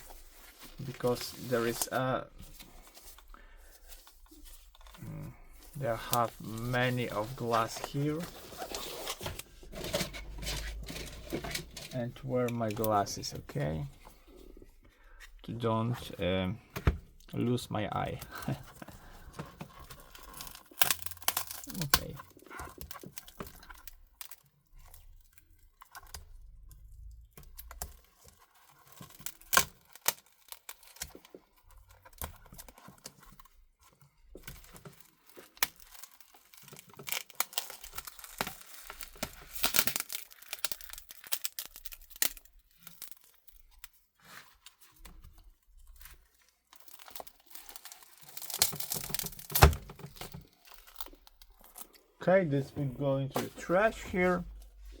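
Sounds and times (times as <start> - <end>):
adhesive tearing with crackling: 18.1 - 26.5, 27.3 - 52.1.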